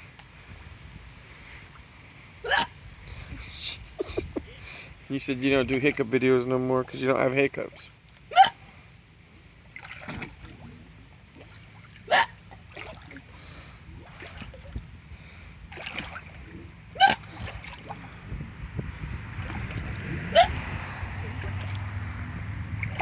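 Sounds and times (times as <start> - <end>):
pool water lapping: 0.0 - 23.0
person hiccupping: 2.4 - 2.7, 20.3 - 20.6.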